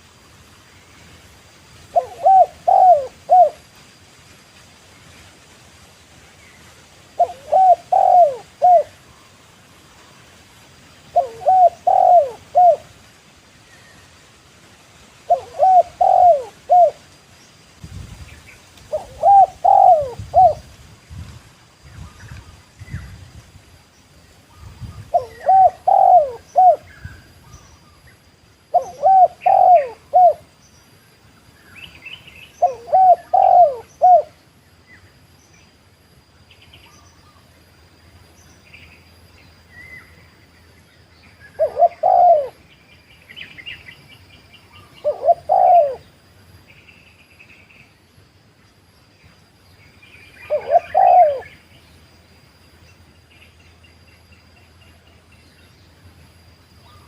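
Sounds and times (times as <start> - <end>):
dove cooing: 1.9 - 3.6, 7.1 - 9.0, 11.1 - 12.9, 15.3 - 17.0, 18.9 - 20.7, 25.1 - 26.9, 28.7 - 30.5, 32.6 - 34.4, 41.5 - 42.7, 44.8 - 46.1, 50.4 - 51.6
small birds chirping: 11.1 - 13.0, 15.3 - 57.0.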